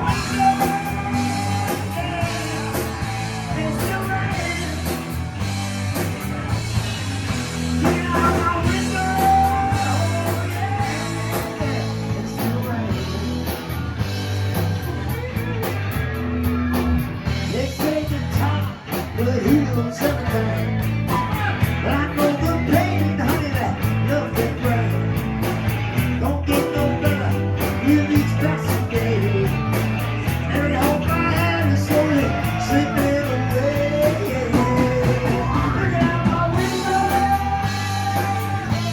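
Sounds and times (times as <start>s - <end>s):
person singing: 0.0s - 5.5s, 7.5s - 13.7s, 17.2s - 25.0s, 26.2s - 38.9s
bass line: 0.0s - 38.9s
electric guitar: 0.0s - 38.9s
drum beat: 34.2s - 38.9s.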